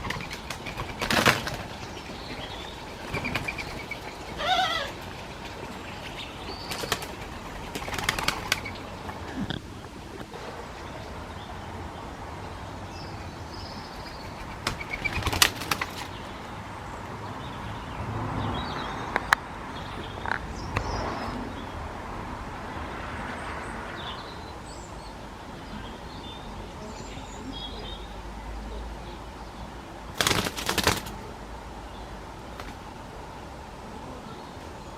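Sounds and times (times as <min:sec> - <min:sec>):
birds chirping and singing: 0:00.0 - 0:16.7, 0:17.3 - 0:21.8.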